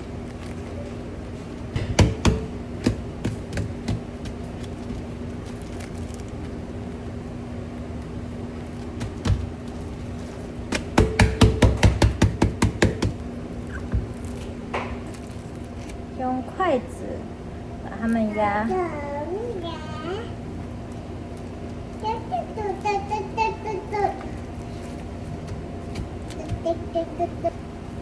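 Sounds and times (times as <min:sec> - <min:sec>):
steady low hum: 0:00.0 - 0:28.0
sharp kitchen knocks and taps: 0:01.7 - 0:04.4, 0:10.7 - 0:13.2.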